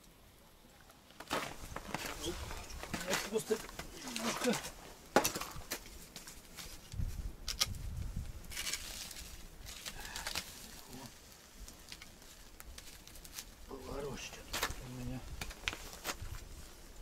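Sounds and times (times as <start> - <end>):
campfire logs knocking and clattering: 1.1 - 7.7, 11.6 - 16.4.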